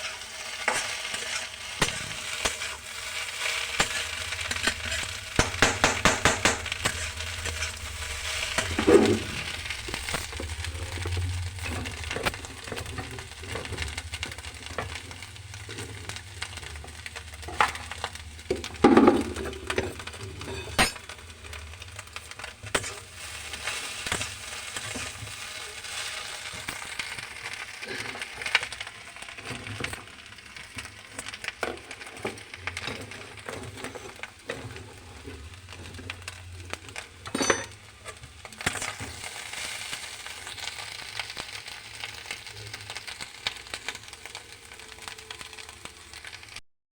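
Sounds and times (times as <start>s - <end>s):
spoon scraping a pan: 0.0s - 13.9s, 18.5s - 21.1s
food sizzling in a pan: 0.0s - 46.6s.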